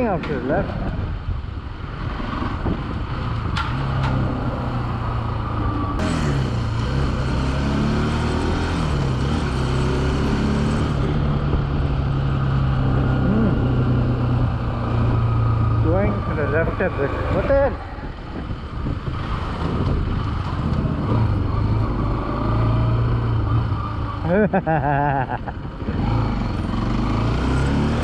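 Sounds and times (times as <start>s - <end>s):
road and wind noise: 0.0s - 28.0s
motorcycle engine running: 6.0s - 11.4s.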